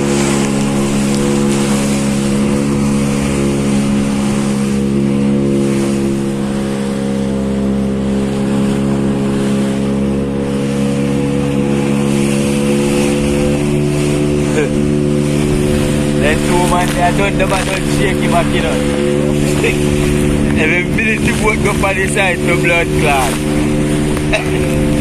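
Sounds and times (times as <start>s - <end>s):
engine running steadily: 0.0s - 25.0s.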